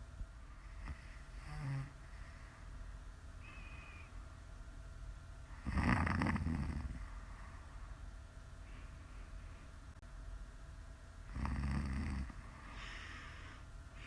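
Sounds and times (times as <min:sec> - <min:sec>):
woman snoring: 0:00.8 - 0:02.0, 0:05.6 - 0:07.1, 0:11.3 - 0:13.3.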